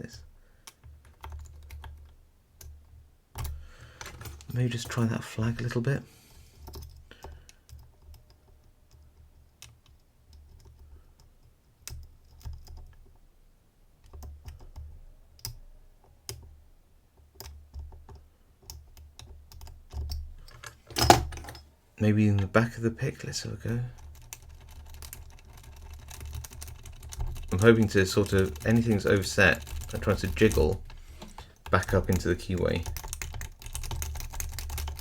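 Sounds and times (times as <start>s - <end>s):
lock pick clicking metal: 20.1s - 21.6s.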